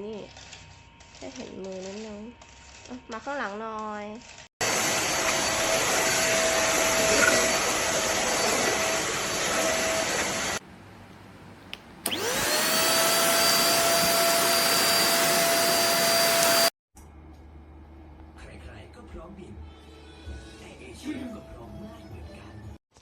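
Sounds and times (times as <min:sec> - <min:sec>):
vacuum cleaner motor whine: 0:04.6 - 0:10.6, 0:12.1 - 0:16.7.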